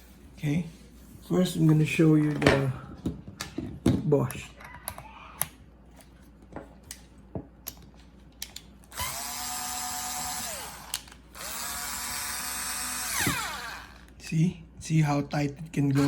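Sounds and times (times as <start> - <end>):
cordless screwdriver motor running: 8.9 - 14.1.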